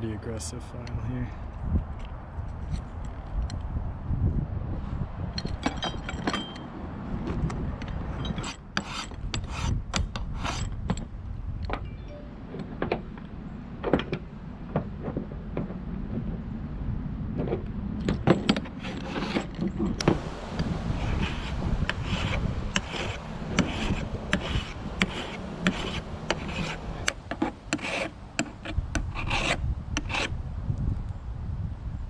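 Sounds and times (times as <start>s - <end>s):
hand file rasping on metal: 8.4s - 10.7s, 20.6s - 30.4s
steady low rumble: 20.0s - 32.0s.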